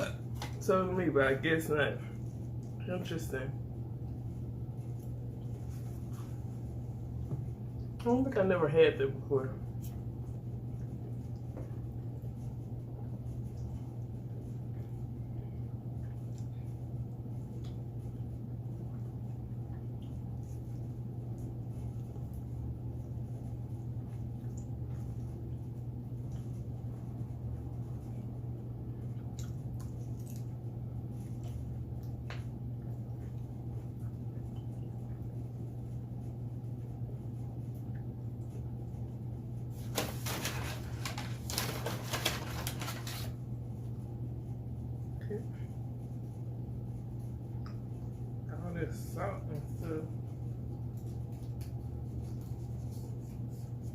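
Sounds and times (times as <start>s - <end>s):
steady low hum: 0.0s - 53.9s
quiet eating: 9.6s - 39.5s
crisp crackling: 39.8s - 43.4s.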